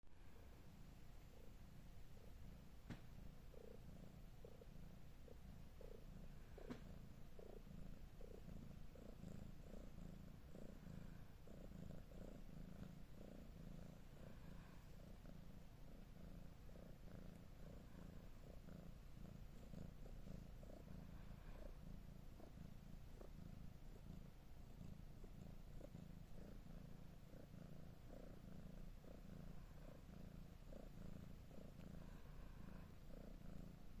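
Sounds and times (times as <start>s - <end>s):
cat purring: 0.1s - 34.0s.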